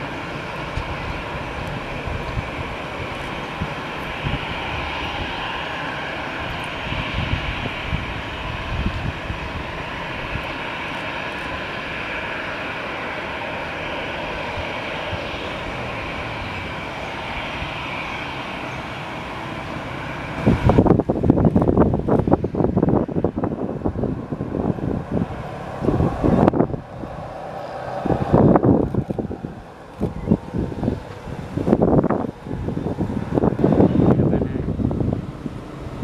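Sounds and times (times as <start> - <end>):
jet engines whining: 0.0 - 36.0
low rumble: 19.8 - 36.0.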